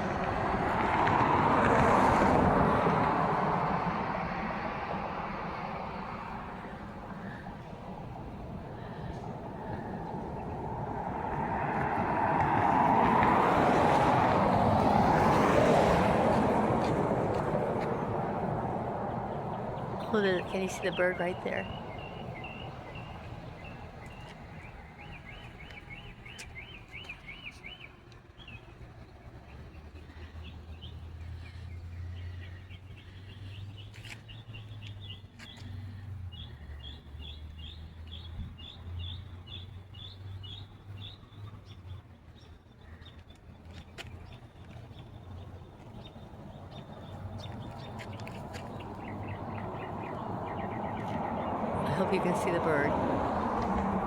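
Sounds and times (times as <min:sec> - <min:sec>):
street traffic noise: 0:00.0 - 0:54.0
bird chirping: 0:19.6 - 0:28.7, 0:29.4 - 0:52.6.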